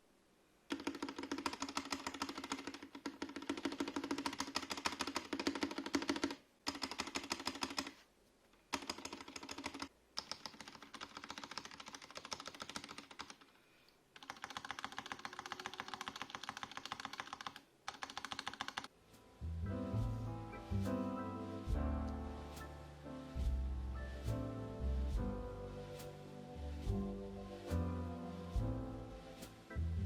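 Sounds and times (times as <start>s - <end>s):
mechanical keyboard keys clacking: 0.7s - 7.9s, 14.2s - 18.9s.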